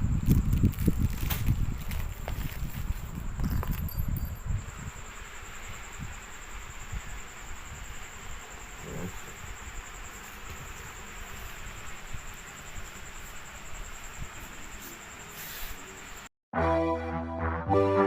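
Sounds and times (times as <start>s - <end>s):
cricket trilling: 0.0s - 16.3s
low hiss of night ambience: 0.0s - 16.3s.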